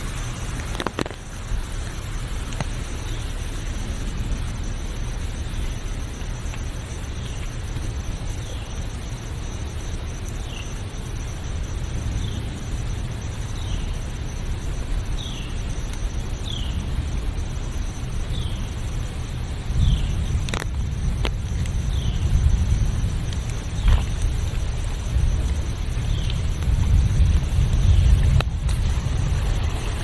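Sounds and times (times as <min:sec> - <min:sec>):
high insect drone: 0:00.0 - 0:30.0
low rumble: 0:00.0 - 0:30.0
bird chirping: 0:15.1 - 0:15.7.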